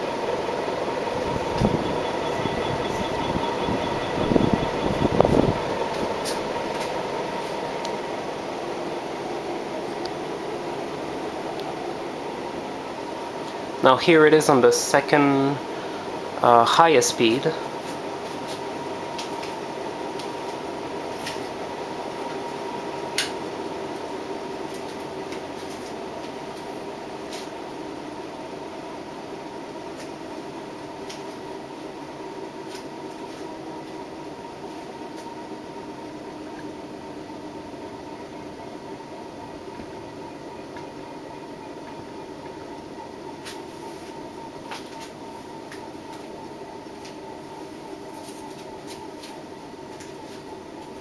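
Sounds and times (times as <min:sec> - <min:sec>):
fan ticking: 0:00.0 - 0:43.4
ceiling fan whirring: 0:00.0 - 0:51.0.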